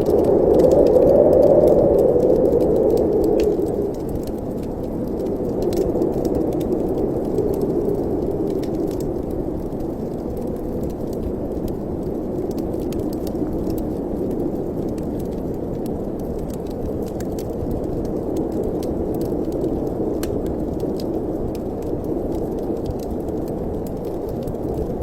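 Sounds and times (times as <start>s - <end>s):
wind rushing through chimney: 0.0s - 25.0s.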